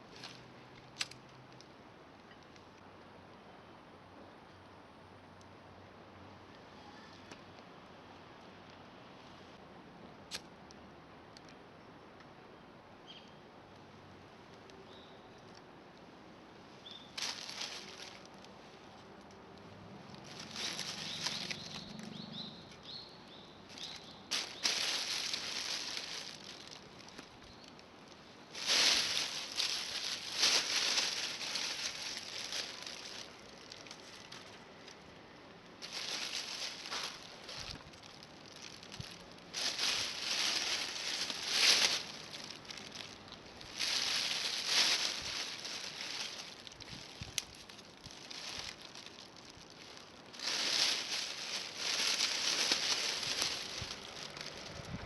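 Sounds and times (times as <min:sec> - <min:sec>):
rustling and scraping: 0:17.1 - 0:19.1, 0:20.0 - 0:22.1, 0:23.7 - 0:35.0, 0:35.6 - 0:55.0.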